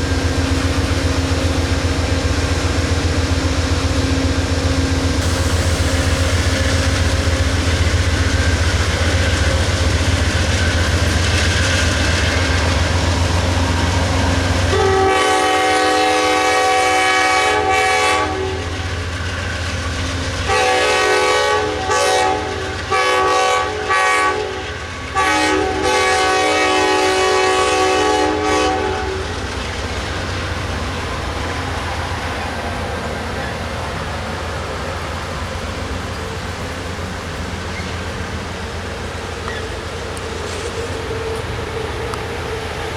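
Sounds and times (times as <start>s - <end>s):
diesel locomotive engine hum: 0.0s - 42.9s
train wheels clattering on rails: 0.0s - 42.9s
train air horn blasts: 14.1s - 19.0s, 20.4s - 29.4s.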